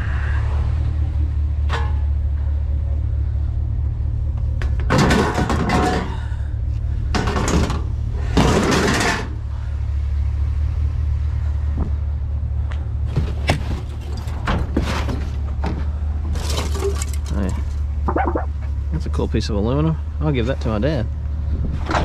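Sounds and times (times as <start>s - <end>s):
vehicle engine idling: 0.0s - 4.9s, 6.0s - 8.4s, 9.3s - 21.8s
clattering and rustling bursts: 4.8s - 6.2s, 7.1s - 9.4s, 13.0s - 18.7s
scrap clicking and scraping: 13.1s - 18.4s.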